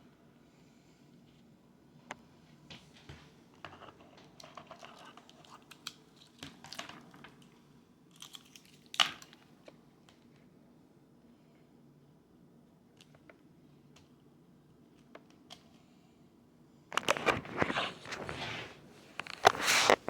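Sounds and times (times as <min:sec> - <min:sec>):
hand handling clicks and rustling: 0:16.9 - 0:20.0.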